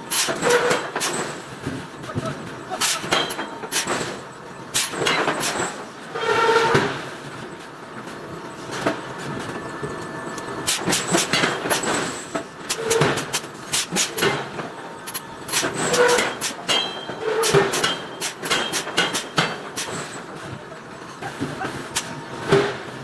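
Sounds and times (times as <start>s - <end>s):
steady background noise: 0.0s - 23.0s.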